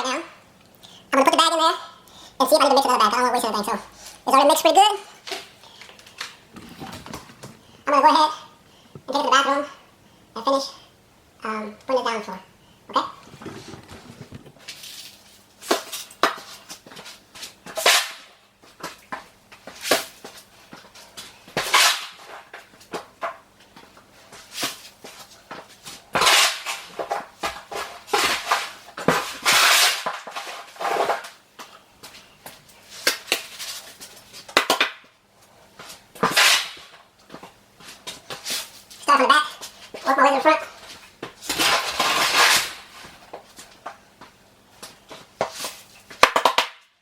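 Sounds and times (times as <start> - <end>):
trowel scraping mortar: 27.7 - 31.3, 41.5 - 42.9.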